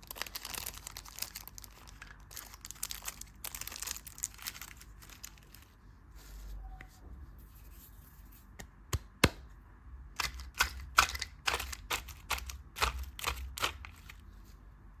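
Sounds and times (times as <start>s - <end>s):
small hard objects clicking: 10.2s - 14.2s.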